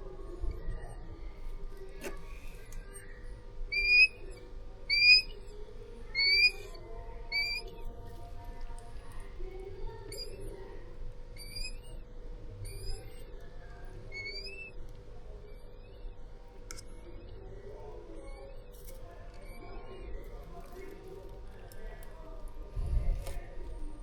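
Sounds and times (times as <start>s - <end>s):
bird chick high chirps: 3.7s - 5.5s, 6.1s - 7.8s, 14.1s - 14.8s.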